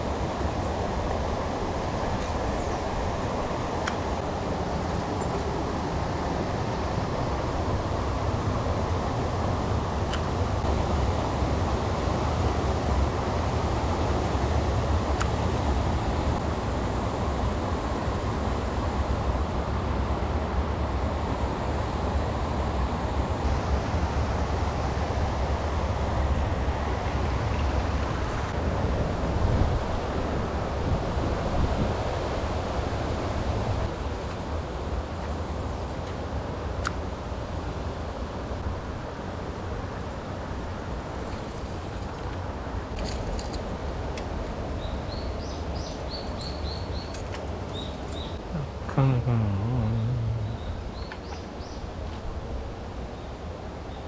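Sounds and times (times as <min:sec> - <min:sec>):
wind noise on microphone: 0:23.0 - 0:36.0
birds chirping: 0:44.8 - 0:48.4, 0:49.0 - 0:51.9
low drawn-out voice-like sound: 0:48.4 - 0:50.8.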